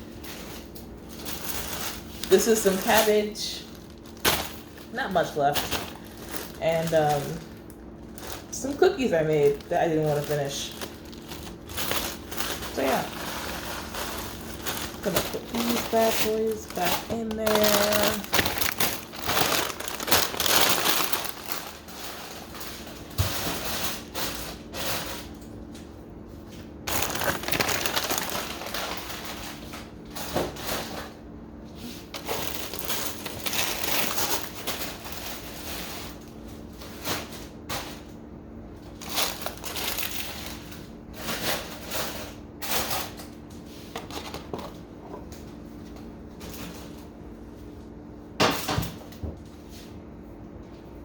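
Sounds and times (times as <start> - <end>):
plastic bags crinkling: 0.0 - 25.4, 26.6 - 31.1, 31.8 - 38.0, 38.8 - 43.2
steady low hum: 0.0 - 48.4
knocks of frozen items: 0.2 - 8.8, 9.5 - 25.4, 26.9 - 31.2, 32.0 - 36.2, 38.9 - 43.2, 48.4 - 49.4.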